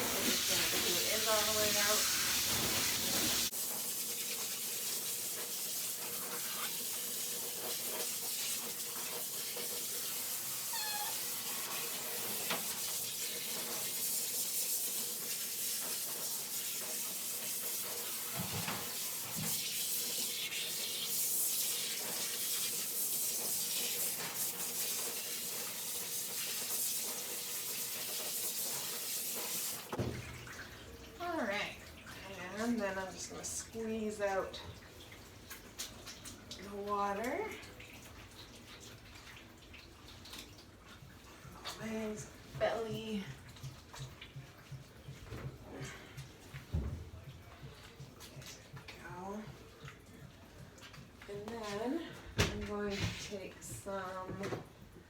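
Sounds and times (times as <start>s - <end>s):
water spraying: 0.0s - 30.0s
puppy whining: 10.7s - 11.2s.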